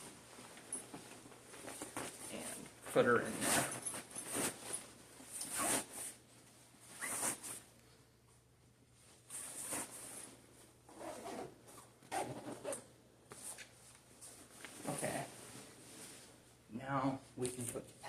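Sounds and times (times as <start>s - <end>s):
zipper being pulled: 5.4s - 6.1s, 7.0s - 7.6s, 10.9s - 12.9s
nylon fabric handling: 6.9s - 7.6s.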